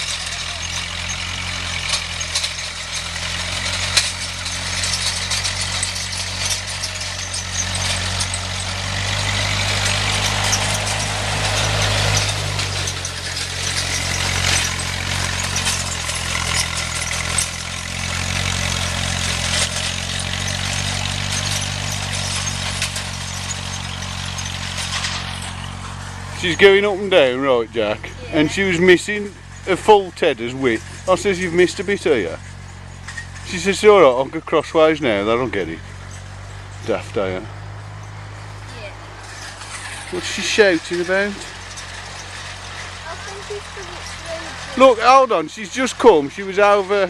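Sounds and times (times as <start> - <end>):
tractor engine running: 0.0 - 47.0.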